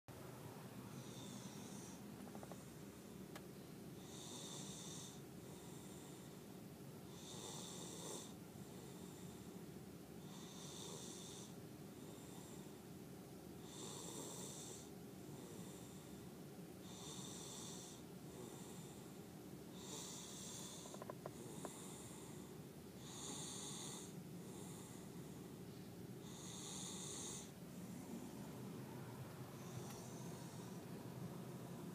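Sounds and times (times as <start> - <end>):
steady low hum: 0.1 - 31.9
faint breath: 0.8 - 13.0, 13.6 - 31.9
toddler snoring: 0.9 - 2.7, 4.0 - 6.4, 7.1 - 9.5, 10.2 - 12.8, 13.6 - 16.2, 16.8 - 19.1, 19.7 - 25.1, 26.2 - 28.2, 29.6 - 30.8.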